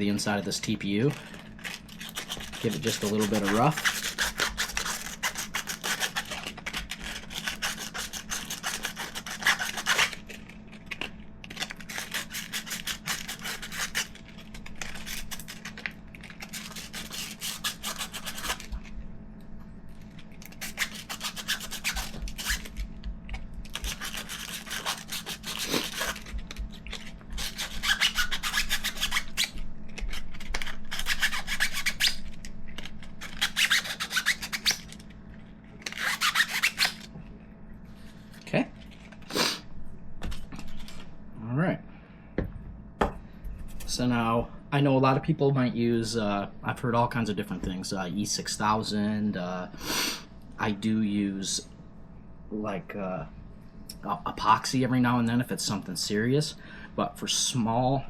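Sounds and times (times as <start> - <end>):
sandpaper rubbing back and forth: 2.0 - 10.2, 11.8 - 14.2, 16.5 - 18.7, 20.6 - 22.7, 23.8 - 26.3, 27.4 - 29.5, 30.9 - 32.2, 33.2 - 34.7.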